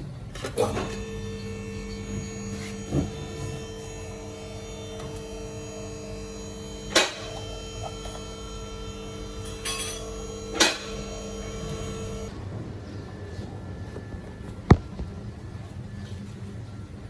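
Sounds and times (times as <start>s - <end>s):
electrical hum: 0.0s - 12.5s
sharp clicks or knocks: 2.3s - 12.3s.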